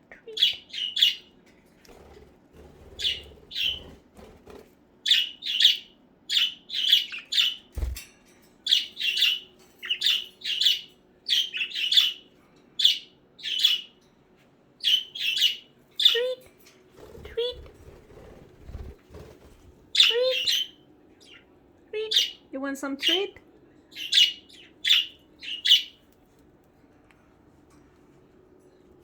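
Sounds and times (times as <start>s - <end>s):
budgerigars chirping: 3.0s - 3.9s, 5.0s - 7.6s, 8.7s - 12.2s, 23.9s - 26.0s.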